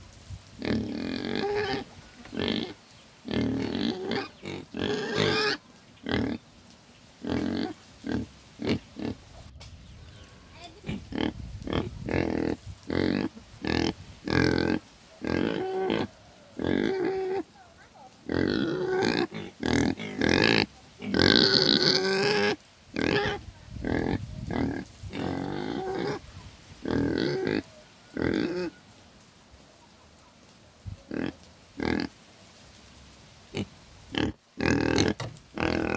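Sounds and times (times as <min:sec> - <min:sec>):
pig grunting and squealing: 0:00.6 - 0:06.4, 0:07.2 - 0:09.2, 0:10.8 - 0:17.6, 0:18.2 - 0:28.8, 0:31.1 - 0:32.1, 0:33.5 - 0:35.9.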